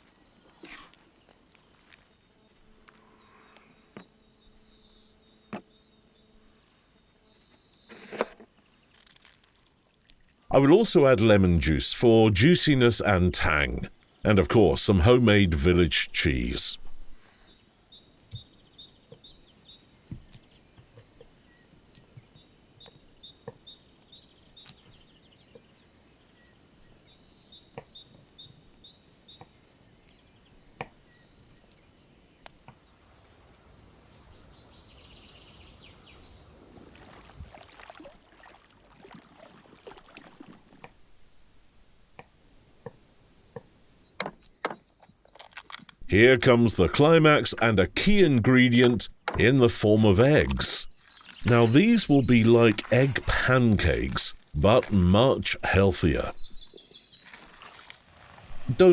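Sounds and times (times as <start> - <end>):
rustling: 57.2 - 58.7.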